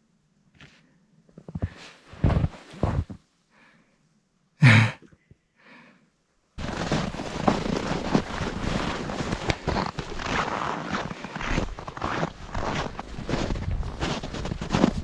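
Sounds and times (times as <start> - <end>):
breath: 3.5 - 6.1
person sighing: 4.6 - 6.0.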